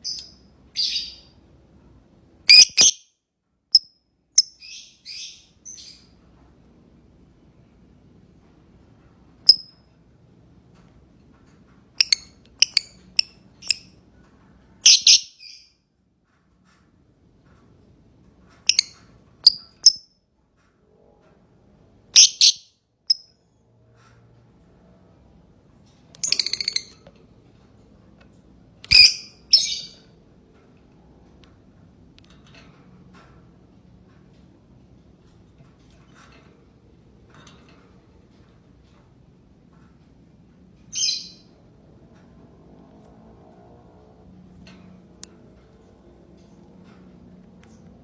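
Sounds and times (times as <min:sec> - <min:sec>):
bird high chirps: 0:00.0 - 0:01.4, 0:02.5 - 0:03.1, 0:14.8 - 0:15.7, 0:22.2 - 0:23.3, 0:26.2 - 0:27.0, 0:28.9 - 0:30.1, 0:40.9 - 0:41.5.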